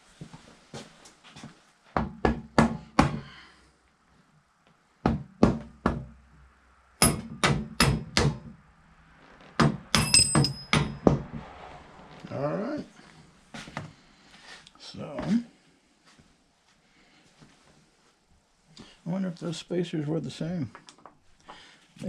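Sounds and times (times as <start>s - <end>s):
small hammer tapping metal: 7.0s - 8.0s, 9.9s - 11.1s.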